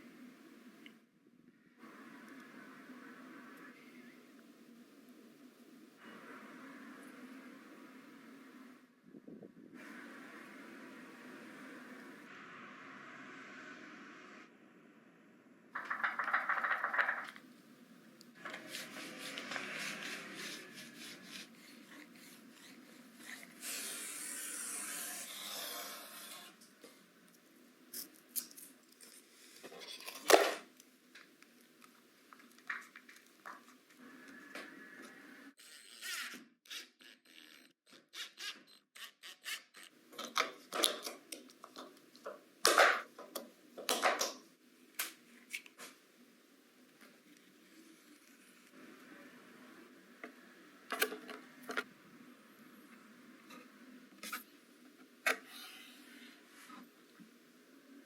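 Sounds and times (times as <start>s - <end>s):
tool scraping craft materials: 18.4s - 26.7s.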